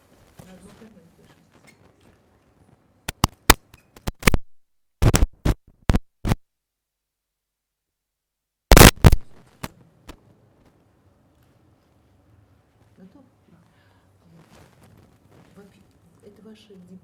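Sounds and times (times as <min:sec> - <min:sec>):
microphone handling knocks and scrapes: 0:05.0 - 0:06.4.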